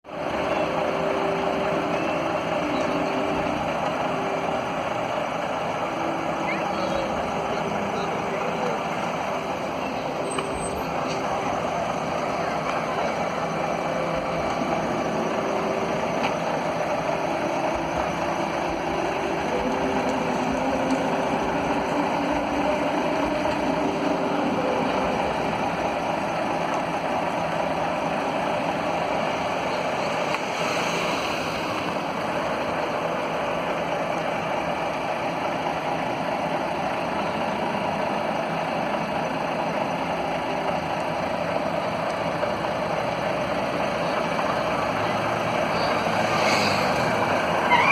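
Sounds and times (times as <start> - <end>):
diesel engine idling: 0.0 - 47.9
high hiss: 30.0 - 33.0.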